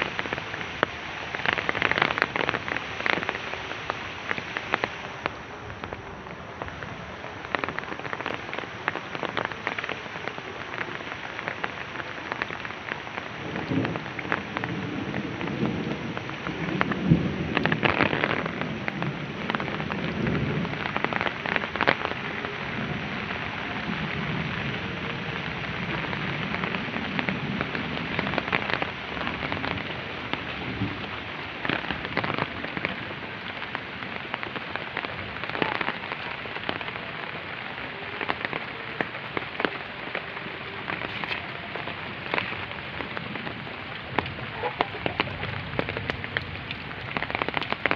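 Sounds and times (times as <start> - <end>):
rain falling: 0.0 - 47.9
raindrops hitting close by: 0.0 - 47.9.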